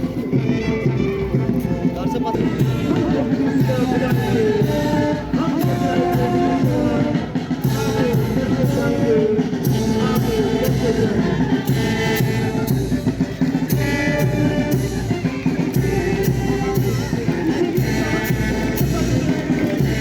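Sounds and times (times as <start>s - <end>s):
steady drum beat: 0.0s - 20.0s
person singing: 2.6s - 12.7s.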